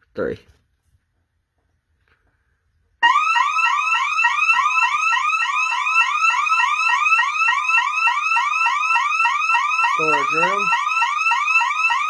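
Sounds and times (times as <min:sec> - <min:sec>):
burglar alarm siren whooping: 0:03.0 - 0:12.0.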